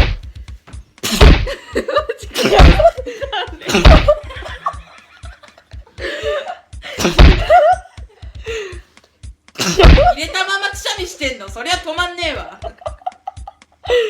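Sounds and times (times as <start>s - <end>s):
man sneezing loudly: 1.0s - 1.5s, 2.4s - 2.9s, 3.7s - 4.0s, 7.0s - 7.5s, 9.6s - 10.1s
laughter: 1.5s - 8.2s, 12.6s - 14.0s.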